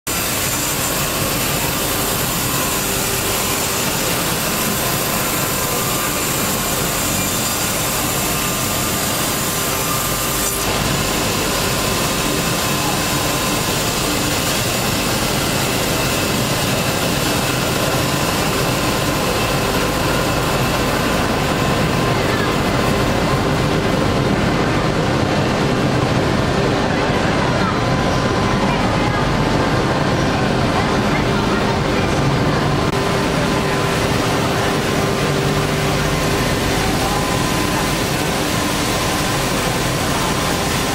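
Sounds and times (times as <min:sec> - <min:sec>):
sawmill running with whining tones: 0:00.0 - 0:40.9.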